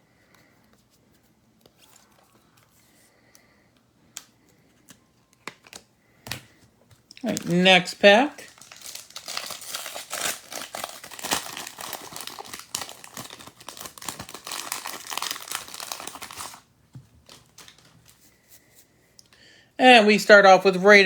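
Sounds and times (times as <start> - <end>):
faint handling of cards: 0.1 - 7.8, 8.4 - 19.4
wrapper tearing and crinkling: 7.2 - 18.2.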